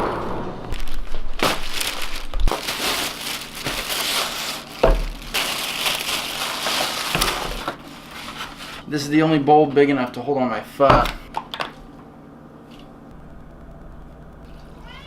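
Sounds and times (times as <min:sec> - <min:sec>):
plastic bag crinkling: 0:00.8 - 0:08.8.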